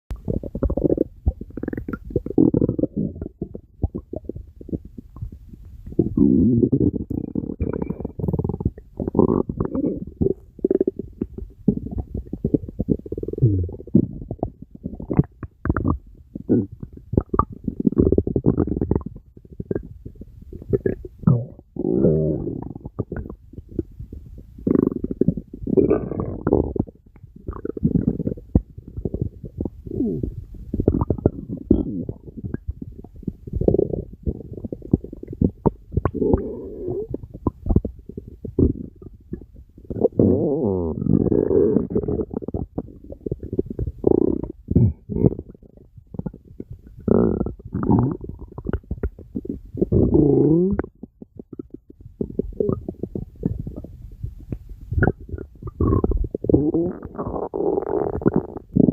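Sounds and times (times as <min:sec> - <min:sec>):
stomach rumbling gurgles: 0:00.1 - 0:58.9.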